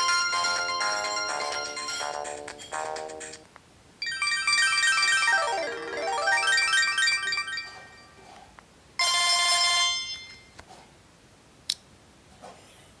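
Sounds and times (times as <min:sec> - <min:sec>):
falling ringtone melody: 0:00.0 - 0:03.4, 0:04.0 - 0:08.2
bright electronic tone: 0:04.4 - 0:08.2.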